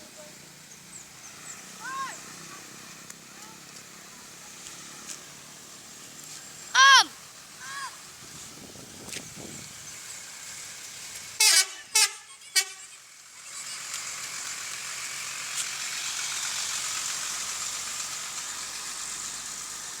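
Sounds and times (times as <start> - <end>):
rushing road noise: 0.0 - 20.0
multi-tone bus horn blasts: 11.4 - 13.0.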